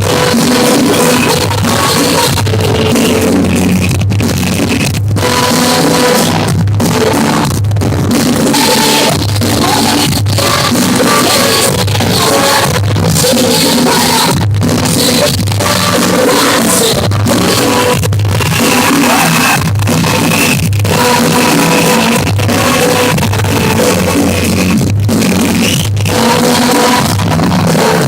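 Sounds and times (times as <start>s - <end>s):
drum kit: 0.0s - 28.0s
person singing: 8.2s - 24.6s.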